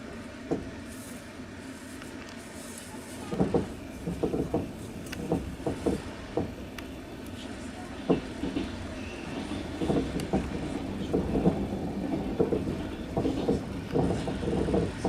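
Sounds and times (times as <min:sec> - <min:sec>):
train rumble inside carriage: 0:00.0 - 0:15.0
wheels clacking over rail joints: 0:03.2 - 0:07.4, 0:08.0 - 0:15.0.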